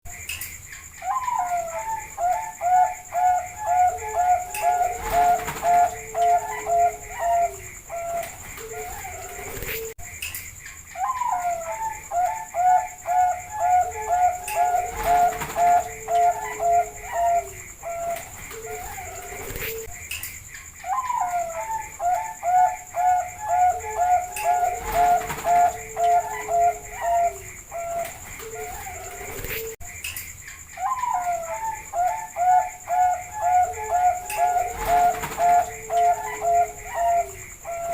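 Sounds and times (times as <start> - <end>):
dove cooing: 1.0 - 10.0, 11.0 - 19.9, 20.8 - 29.8, 30.8 - 37.9.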